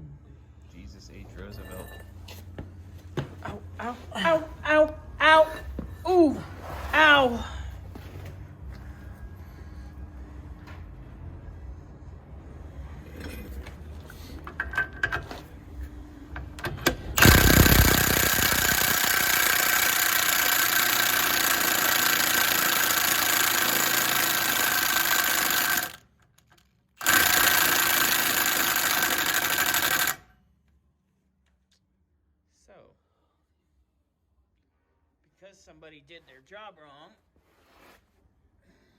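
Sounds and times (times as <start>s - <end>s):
faint metal clanks: 13.0s - 15.4s
impact wrench hammering: 16.8s - 26.0s, 27.0s - 30.2s.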